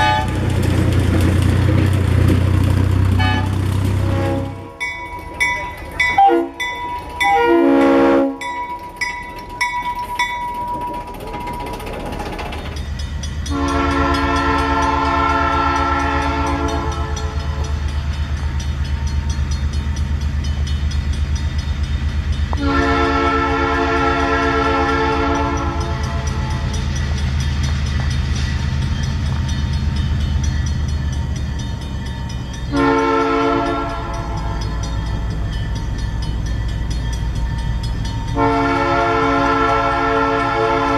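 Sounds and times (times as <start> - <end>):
locomotive horn blasts: 0.0 - 0.5, 3.2 - 4.9, 6.2 - 8.5, 13.4 - 17.7, 22.5 - 26.8, 32.7 - 34.9, 38.4 - 40.9.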